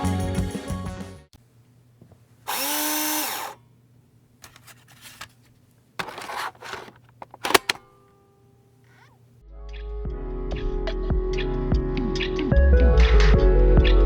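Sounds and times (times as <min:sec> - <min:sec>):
power drill whining: 0:02.5 - 0:03.6
rough scraping: 0:04.4 - 0:07.8.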